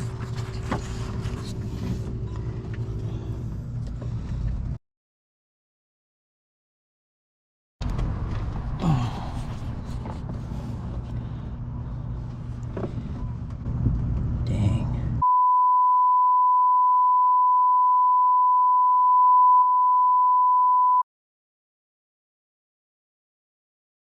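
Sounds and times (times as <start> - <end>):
low hum: 0.0 - 4.8, 7.8 - 20.4
high-pitched electronic beep: 15.2 - 21.0.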